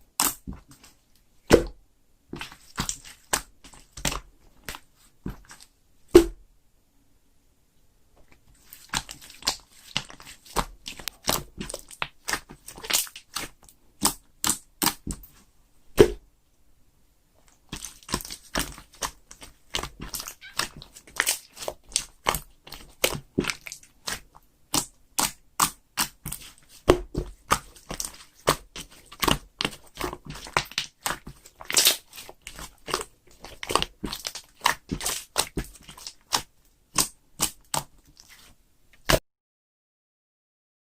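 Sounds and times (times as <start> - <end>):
slime crackling and popping: 8.8 - 15.2, 17.7 - 39.2.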